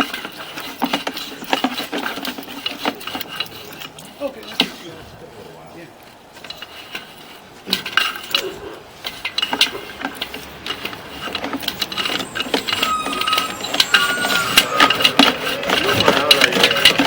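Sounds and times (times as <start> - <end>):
cable and reel clicking and rattling: 9.0 - 17.0.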